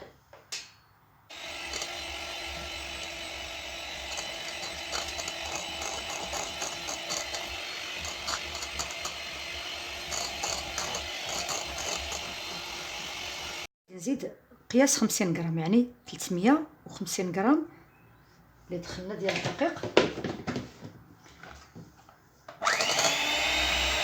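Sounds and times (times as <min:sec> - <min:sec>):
electric mixer running: 0:01.3 - 0:13.7, 0:22.6 - 0:24.0
mixer beaters clicking and rattling: 0:01.3 - 0:13.7, 0:22.6 - 0:24.0.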